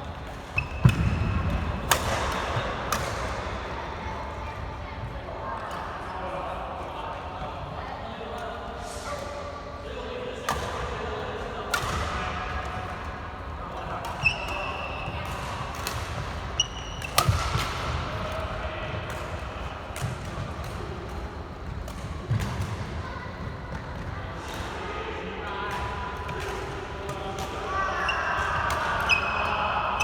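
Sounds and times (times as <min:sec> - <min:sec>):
murmur of voices: 0:00.0 - 0:30.0
shoes squeaking on court: 0:00.2 - 0:01.2
rackets striking shuttlecock: 0:00.6 - 0:03.4, 0:15.2 - 0:18.0.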